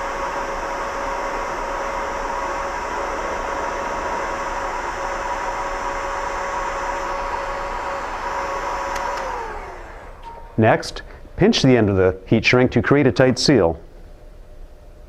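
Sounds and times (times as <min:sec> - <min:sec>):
heat gun blowing: 0:00.0 - 0:11.4.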